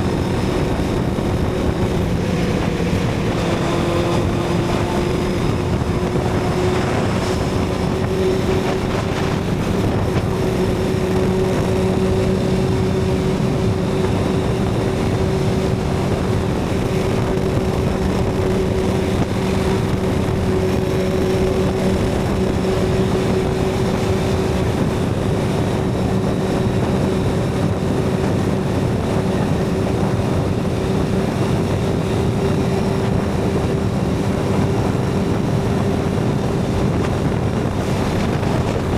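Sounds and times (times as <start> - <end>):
motorcycle engine cruising: 0.0 - 38.9.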